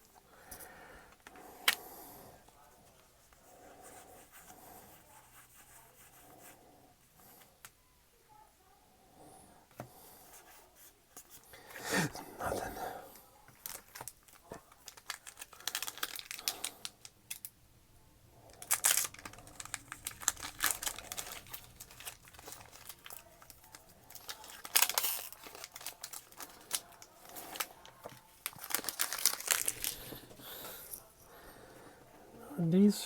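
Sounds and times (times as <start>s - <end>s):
foil wrappers crinkling and tearing: 13.6s - 17.5s, 18.4s - 30.7s.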